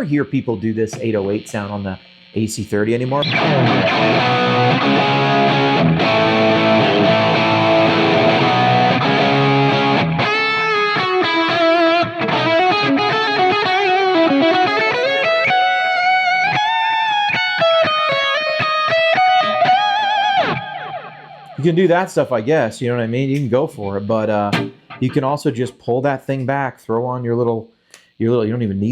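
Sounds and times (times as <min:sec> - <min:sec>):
overdriven electric guitar: 0:03.0 - 0:21.6, 0:24.5 - 0:25.3.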